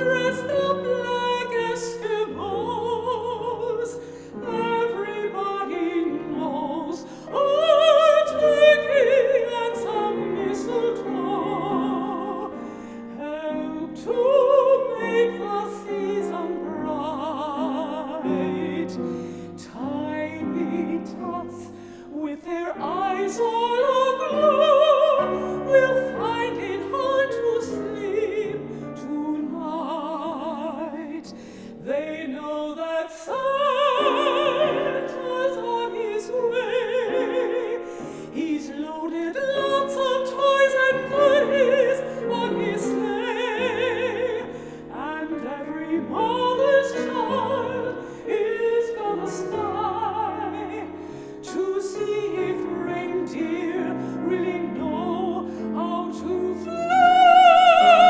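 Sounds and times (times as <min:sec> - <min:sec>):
operatic female voices singing: 0:00.0 - 0:12.6, 0:13.2 - 0:58.0
piano accompaniment: 0:00.0 - 0:58.0.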